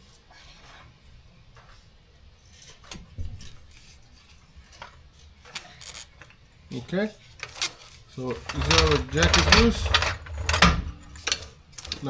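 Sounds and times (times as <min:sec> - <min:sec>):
metal jack stands clicking and knocking: 0:07.4 - 0:07.7, 0:08.3 - 0:12.0.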